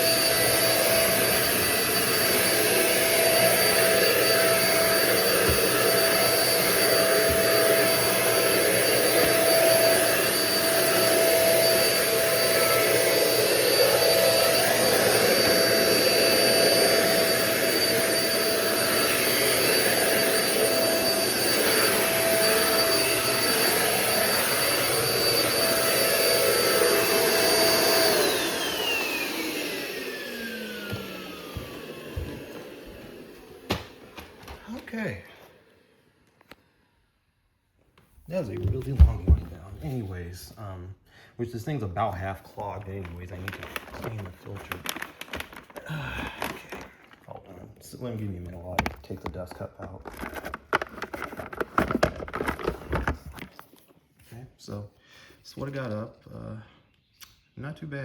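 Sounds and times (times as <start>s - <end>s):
vacuum cleaner motor whining: 0.0s - 36.8s, 38.4s - 40.3s, 41.6s - 53.8s.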